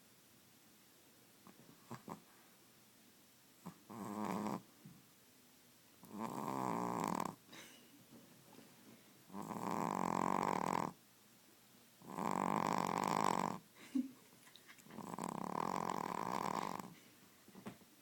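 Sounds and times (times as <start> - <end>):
puppy snoring: 1.4 - 2.3, 3.6 - 4.7, 6.0 - 7.4, 9.3 - 11.0, 12.0 - 13.7, 15.0 - 17.0.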